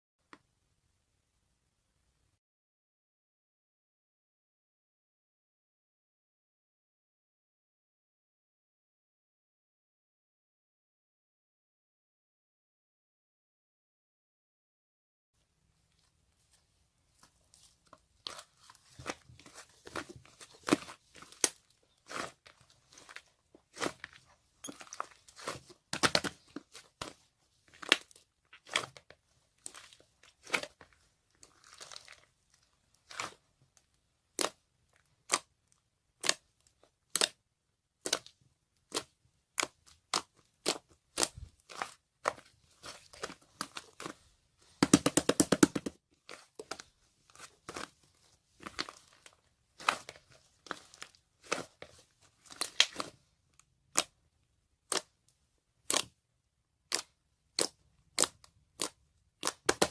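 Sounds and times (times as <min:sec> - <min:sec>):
slime popping and crackling: 0:18.2 - 0:32.3, 0:48.6 - 0:53.2, 0:55.8 - 0:56.2, 0:56.8 - 0:59.9.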